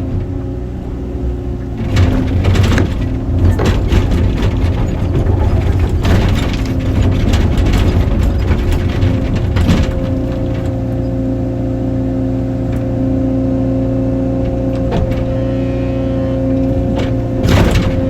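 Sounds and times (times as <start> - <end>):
excavator engine under load: 0.0 - 18.0
wood cracking and crunching: 1.7 - 11.0.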